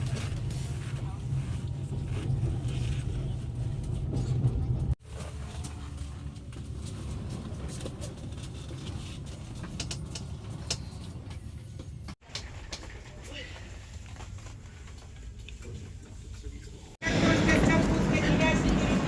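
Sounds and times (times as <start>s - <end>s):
low vehicle rumble: 0.0s - 12.2s, 17.0s - 19.0s.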